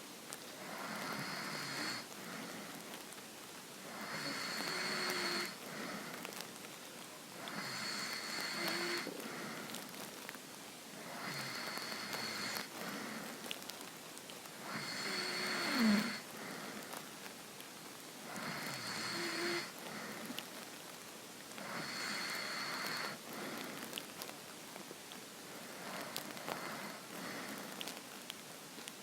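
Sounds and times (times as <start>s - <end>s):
person snoring: 0.6s - 2.1s, 3.9s - 6.0s, 7.4s - 9.2s, 14.6s - 16.2s, 18.3s - 19.8s.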